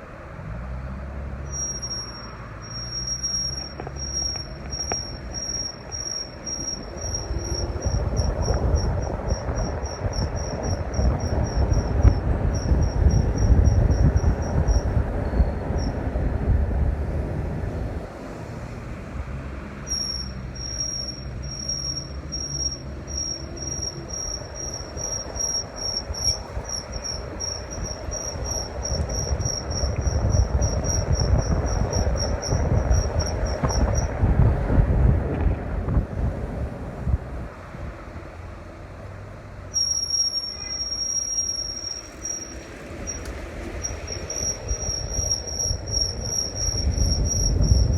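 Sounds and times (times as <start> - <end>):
low road rumble: 0.0 - 47.9
pulsing high-pitched squeal: 1.4 - 16.4, 19.8 - 34.1, 39.7 - 47.9.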